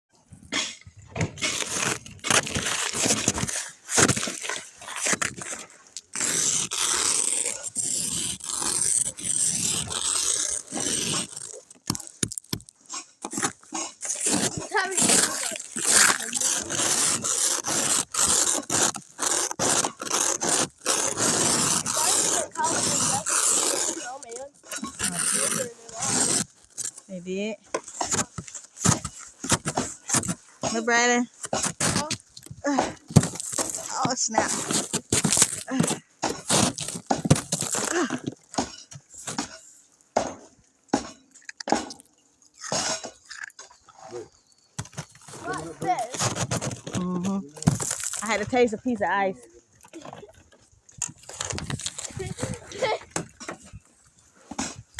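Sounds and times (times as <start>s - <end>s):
snow being scraped: 1.4s - 11.6s, 13.4s - 26.5s, 33.2s - 38.1s.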